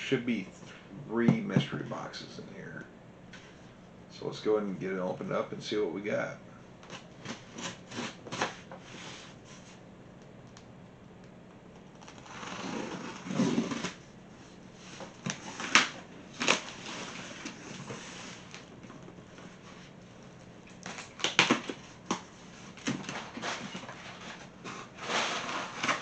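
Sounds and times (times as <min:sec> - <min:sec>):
cardboard box rustling scrape: 0:12.2 - 0:14.0, 0:16.4 - 0:18.6, 0:22.7 - 0:26.0.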